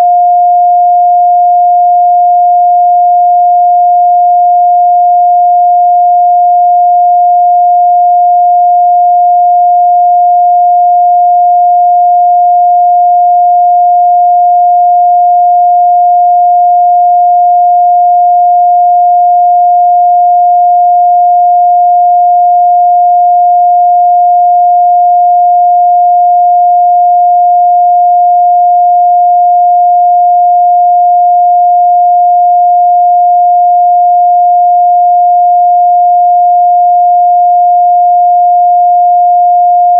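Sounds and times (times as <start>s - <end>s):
sine wave test tone: 0.0s - 39.9s.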